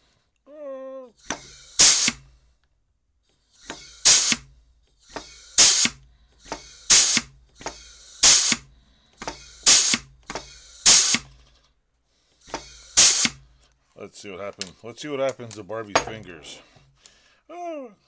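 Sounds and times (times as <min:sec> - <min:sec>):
rivet squeezer click: 0:01.2 - 0:02.3, 0:03.6 - 0:04.5, 0:05.1 - 0:11.4, 0:12.5 - 0:13.4
compressed air hiss: 0:01.2 - 0:02.6, 0:03.4 - 0:11.5, 0:12.3 - 0:13.6
exhaust air blast: 0:01.2 - 0:02.6, 0:03.4 - 0:11.4, 0:12.4 - 0:13.6.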